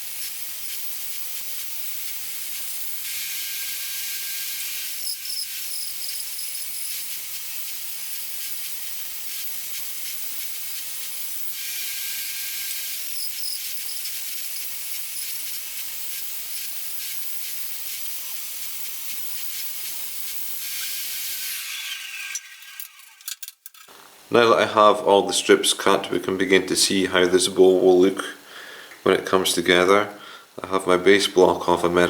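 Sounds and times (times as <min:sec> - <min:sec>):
power saw cutting wood: 0:00.0 - 0:23.2.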